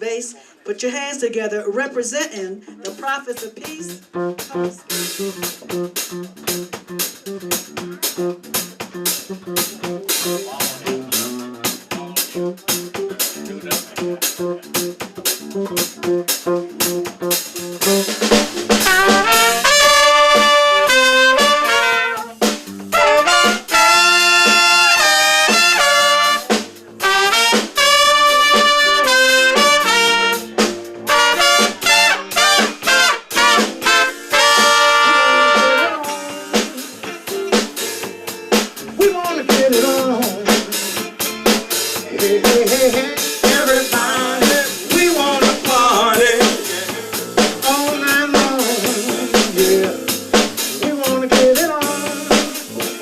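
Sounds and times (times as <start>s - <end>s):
drums and bass groove: 2.8s - 53.0s
horn playing a melody: 18.8s - 36.6s.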